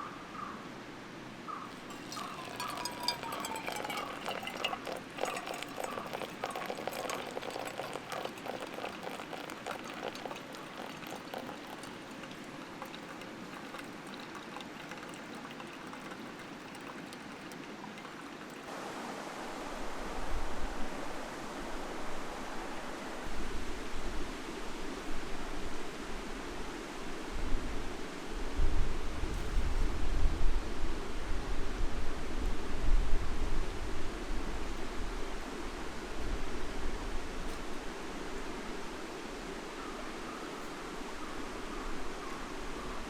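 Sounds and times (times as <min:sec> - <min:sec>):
liquid pouring and trickling: 0:01.7 - 0:18.7
small clicks and splashes: 0:01.7 - 0:18.7
mountain stream rushing: 0:01.7 - 0:23.9.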